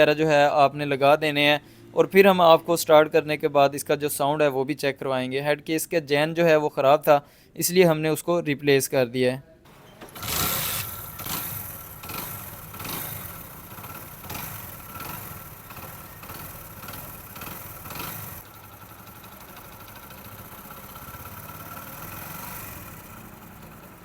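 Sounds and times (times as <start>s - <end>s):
motorcycle engine running: 9.7s - 24.0s.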